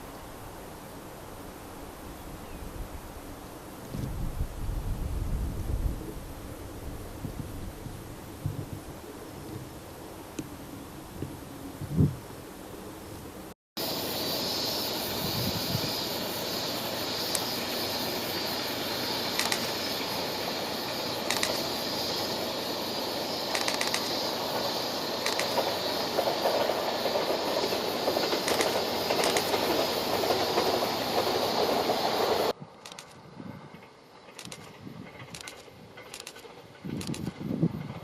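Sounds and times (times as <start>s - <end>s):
train rush and rumble: 13.2s - 38.0s
wheel clicks over rail joints: 23.5s - 33.2s.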